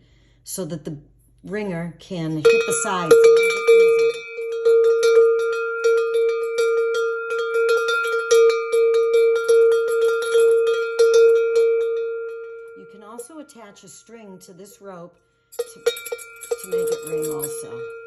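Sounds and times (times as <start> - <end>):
bell clapper striking: 2.4 - 13.9, 15.5 - 18.0
tower bell ringing: 2.4 - 18.0.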